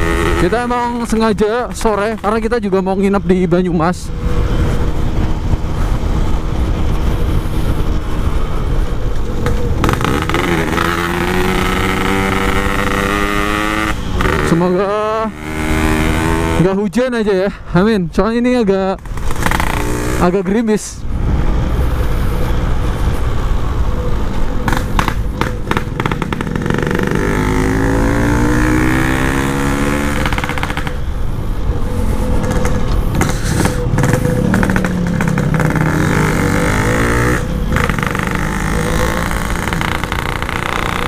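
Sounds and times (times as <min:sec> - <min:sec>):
wind buffeting microphone: 0:02.8 - 0:14.4
two-stroke motorcycle engine: 0:09.4 - 0:16.6, 0:19.0 - 0:20.4, 0:24.7 - 0:31.2, 0:32.4 - 0:41.0.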